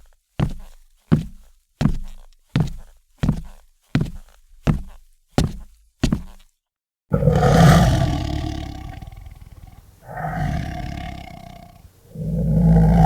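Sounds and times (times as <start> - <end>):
large animal roaring: 7.1 - 13.0.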